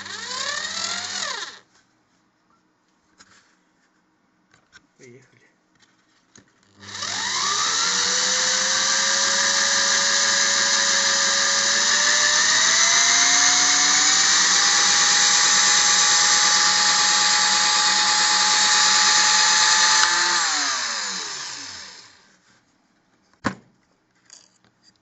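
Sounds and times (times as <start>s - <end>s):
cordless screwdriver motor whine: 0.0s - 1.6s, 6.8s - 22.2s.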